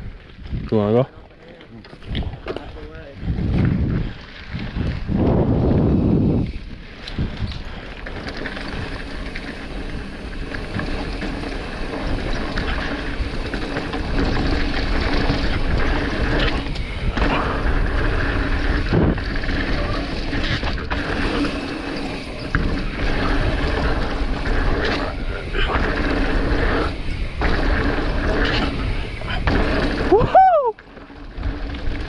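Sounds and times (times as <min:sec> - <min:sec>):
wind rushing over microphone: 0:00.0 - 0:01.1, 0:02.0 - 0:32.0
bike frame and chain rattling: 0:00.0 - 0:32.0.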